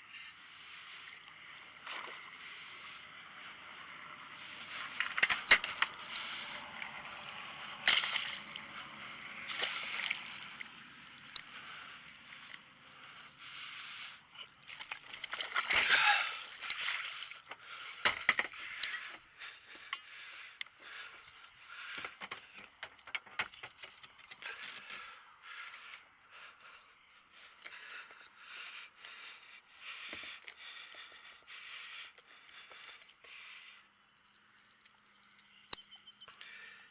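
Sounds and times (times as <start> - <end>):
water splashing around boat: 7.2 - 18.9.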